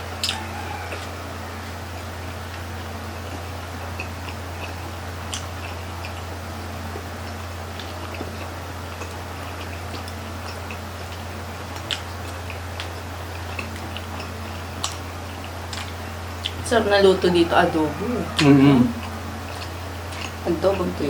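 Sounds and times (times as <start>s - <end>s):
chewing and mouth sounds: 0.2s - 1.8s, 2.5s - 16.7s, 17.9s - 20.9s
low hum: 4.5s - 21.0s.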